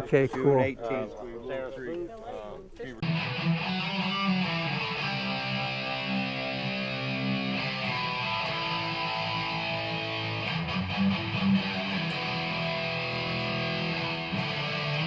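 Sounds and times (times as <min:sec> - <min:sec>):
guitar music with chords: 0:03.0 - 0:15.0.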